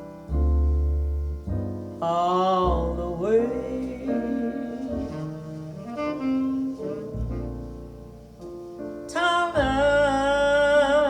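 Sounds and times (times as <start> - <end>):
ballad with piano: 0.0 - 11.0
wavering singing voice: 2.0 - 7.4.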